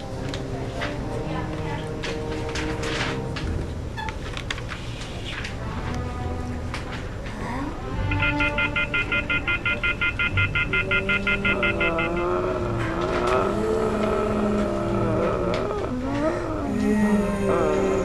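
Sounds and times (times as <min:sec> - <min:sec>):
background music: 0:05.6 - 0:15.2
electronic phone ringer trilling: 0:08.0 - 0:12.5.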